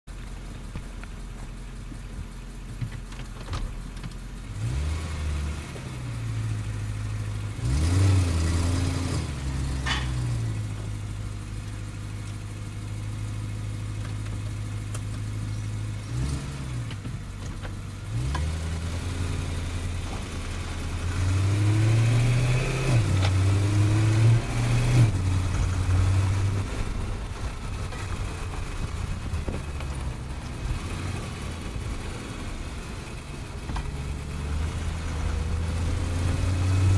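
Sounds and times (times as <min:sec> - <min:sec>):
car engine note rising and falling: 0:04.4 - 0:36.9
driveshaft rattle: 0:09.1 - 0:12.4.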